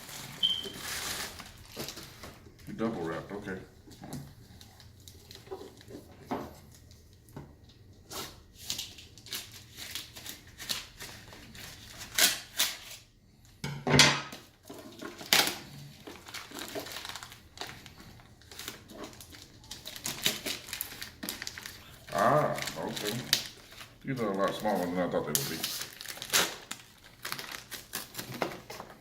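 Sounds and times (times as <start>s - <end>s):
packaging being torn open: 8.6s - 13.0s, 18.4s - 28.4s.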